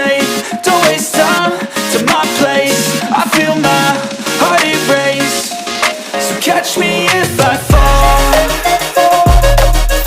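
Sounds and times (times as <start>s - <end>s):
pop song with electronic beat: 0.0s - 10.0s
heavy deep bass: 7.7s - 8.6s.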